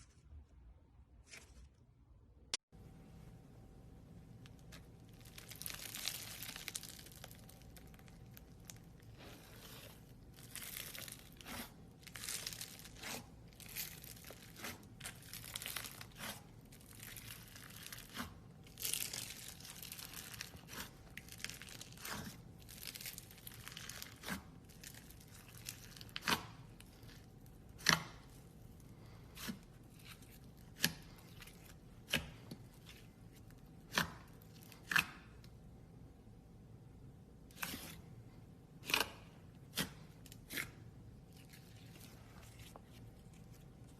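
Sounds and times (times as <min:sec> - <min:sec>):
crackling and tearing: 0:04.6 - 0:28.3.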